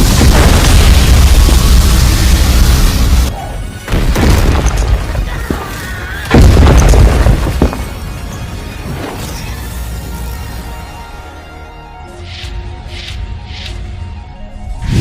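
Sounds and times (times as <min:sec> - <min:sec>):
heavy booms: 0:00.0 - 0:03.3, 0:06.3 - 0:08.0
dramatic music: 0:00.0 - 0:15.0.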